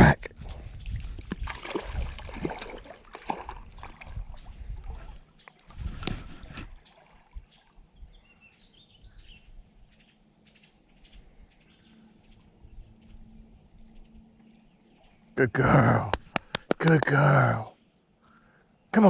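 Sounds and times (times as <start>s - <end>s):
songbirds chirping: 0.0s - 19.0s.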